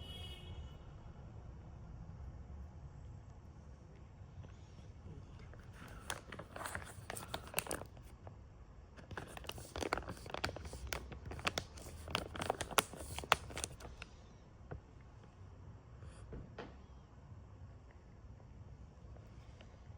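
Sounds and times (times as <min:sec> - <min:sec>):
plastic snack packet crinkling: 0:05.5 - 0:08.1, 0:09.0 - 0:14.0.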